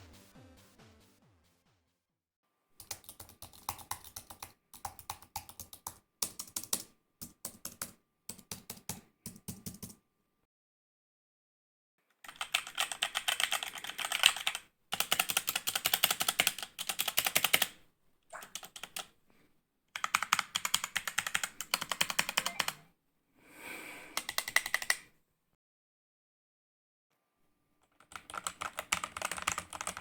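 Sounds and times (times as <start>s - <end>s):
fast keyboard typing: 2.8s - 10.0s, 12.2s - 17.8s, 18.4s - 19.1s, 20.0s - 22.8s, 24.2s - 25.0s, 27.8s - 30.0s.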